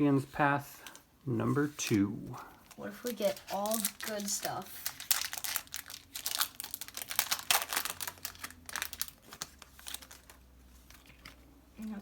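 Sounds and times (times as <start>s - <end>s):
foil wrapper crinkling and tearing: 2.6s - 11.4s.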